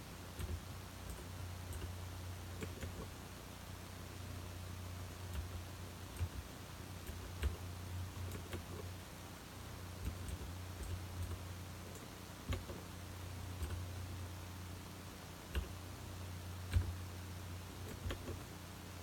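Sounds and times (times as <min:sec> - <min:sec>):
steady low hum: 0:00.0 - 0:19.0
keyboard key clicks: 0:12.0 - 0:12.8, 0:16.7 - 0:17.0, 0:17.9 - 0:18.4.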